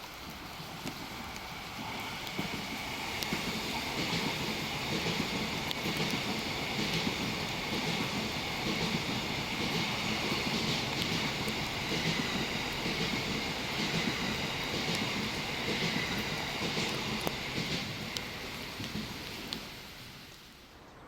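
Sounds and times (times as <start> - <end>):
train wheels rushing on rails: 0.0 - 21.0.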